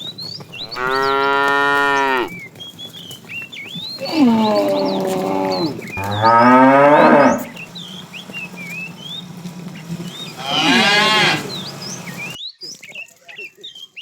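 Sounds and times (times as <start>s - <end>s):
small birds chirping: 0.0s - 14.0s
cattle mooing: 0.6s - 2.3s, 4.0s - 12.3s.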